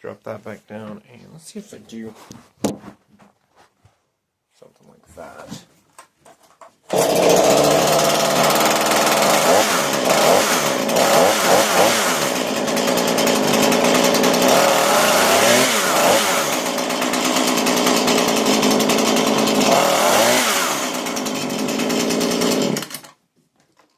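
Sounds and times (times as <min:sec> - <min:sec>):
chainsaw revving: 0:06.9 - 0:23.2.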